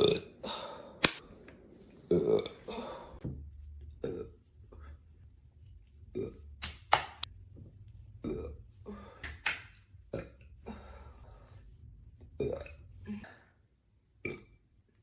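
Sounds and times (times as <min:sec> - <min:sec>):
woman burping: 0:12.4 - 0:13.3.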